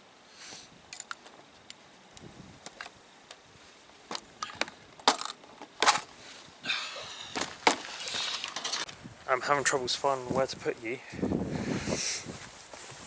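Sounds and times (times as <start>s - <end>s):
objects clattering: 4.1s - 6.1s, 7.3s - 8.9s.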